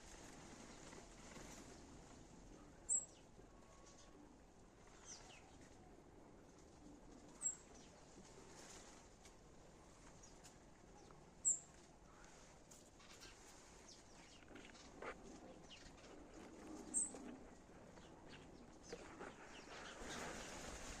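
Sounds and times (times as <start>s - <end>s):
sparrows chirping: 2.7s - 4.1s, 4.9s - 5.7s, 7.4s - 8.0s, 10.2s - 20.5s.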